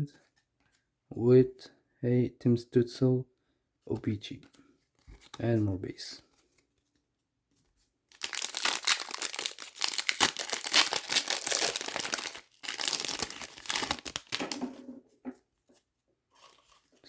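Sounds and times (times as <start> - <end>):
plastic wrapper tearing and crinkling: 8.1 - 14.6.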